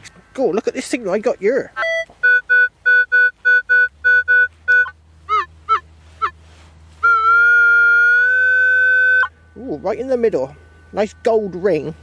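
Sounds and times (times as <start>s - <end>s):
long steady tone: 7.0s - 12.0s
metal detector beeps: 7.1s - 12.0s
warbling chirps: 7.1s - 12.0s.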